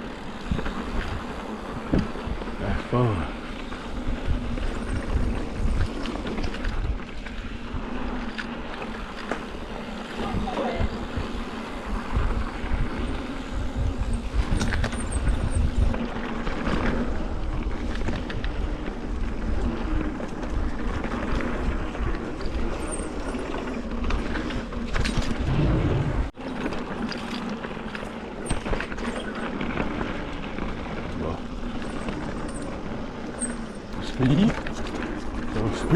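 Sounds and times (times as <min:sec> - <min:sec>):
wind buffeting microphone: 0:00.0 - 0:08.2, 0:09.6 - 0:26.4
bike rattling and ticking: 0:00.0 - 0:35.9
bike tyres rolling on dirt: 0:00.0 - 0:35.9.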